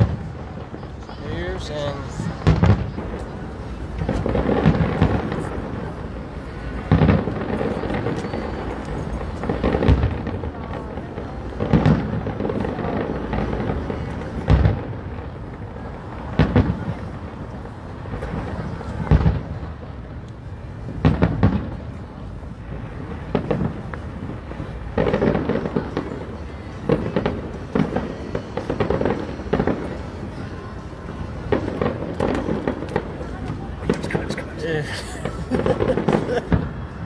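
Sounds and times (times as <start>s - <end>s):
fireworks shells bursting: 22.8s - 36.8s.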